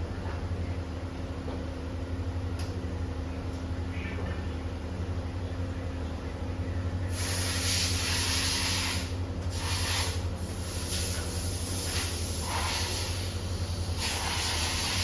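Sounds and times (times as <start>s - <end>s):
steady low hum: 0.0s - 15.0s
hissing spray: 7.1s - 13.3s, 14.0s - 15.0s.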